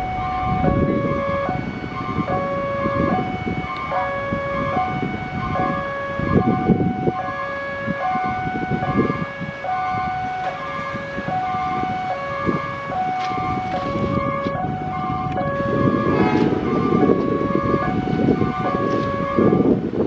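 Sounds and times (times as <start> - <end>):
rumble of passing vehicles: 0.0 - 20.0
two-tone level-crossing siren: 0.0 - 20.0.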